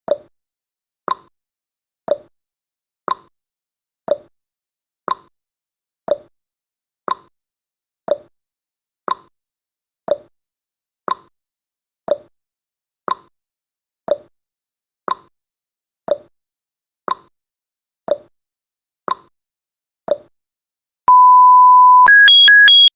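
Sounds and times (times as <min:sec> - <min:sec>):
steady beep: 0:21.1 - 0:22.9.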